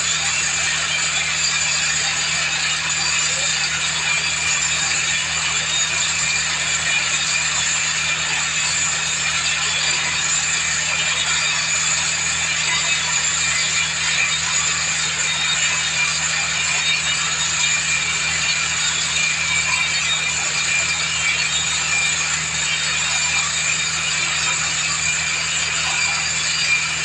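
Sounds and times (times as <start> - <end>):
drilling machine running: 0.0 - 27.0.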